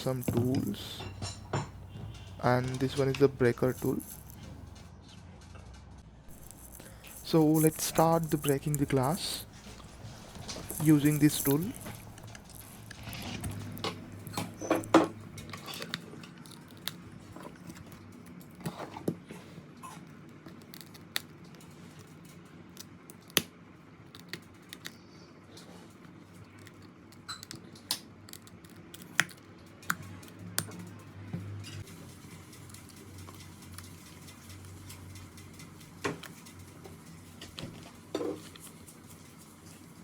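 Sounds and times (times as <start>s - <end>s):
glass clicking and cracking: 0.0s - 4.9s, 6.3s - 17.0s.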